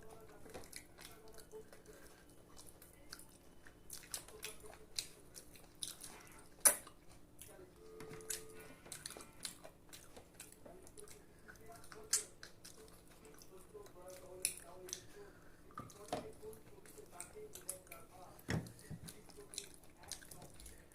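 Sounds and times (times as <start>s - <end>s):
chewing and biting: 0.0s - 7.6s, 8.2s - 15.2s, 15.8s - 20.9s
wet mouth clicks: 6.6s - 7.0s.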